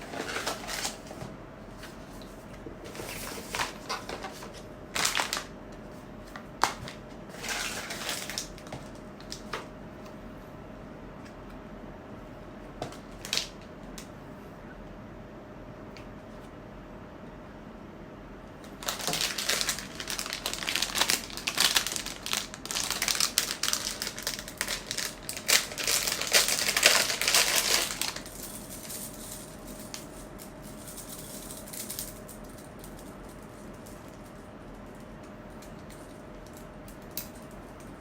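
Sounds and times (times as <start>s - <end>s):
plastic wrapper crinkling: 4.9s - 5.5s, 18.8s - 28.4s.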